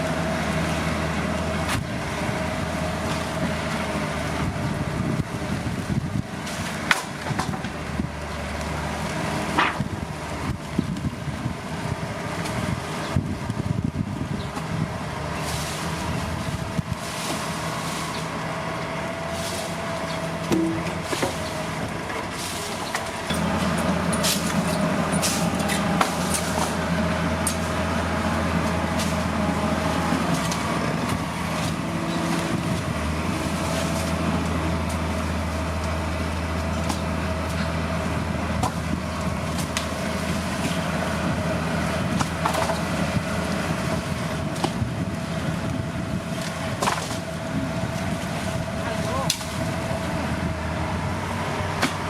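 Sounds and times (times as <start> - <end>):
diesel engine drone: 0.0 - 52.0
machinery whine: 13.2 - 52.0.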